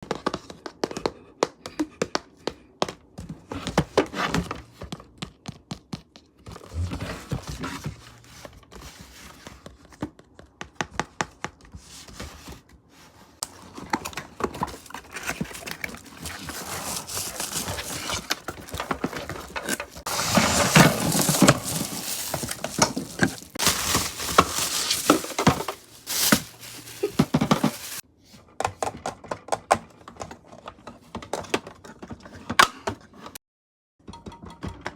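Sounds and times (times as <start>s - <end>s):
packaging crinkling and rustling: 13.4s - 28.0s.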